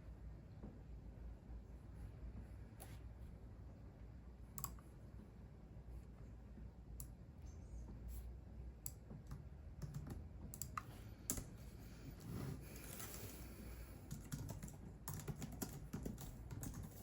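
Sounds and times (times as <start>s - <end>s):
computer keyboard typing: 4.6s - 4.8s, 8.9s - 11.6s, 14.0s - 17.0s.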